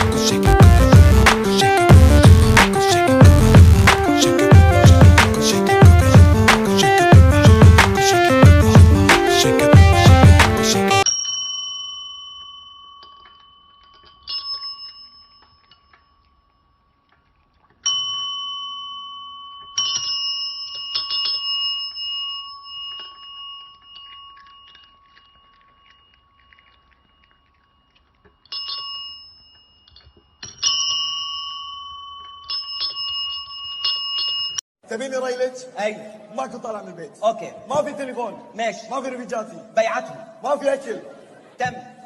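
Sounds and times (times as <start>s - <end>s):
small metal bell ringing: 11.0s - 16.9s, 17.8s - 34.6s.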